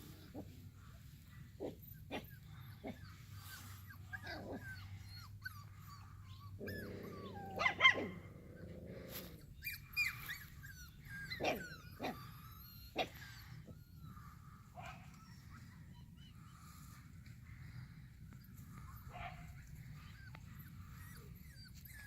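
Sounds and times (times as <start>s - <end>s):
puppies squeaking and whimpering: 1.7s - 22.0s
puppy yelp: 9.6s - 13.6s.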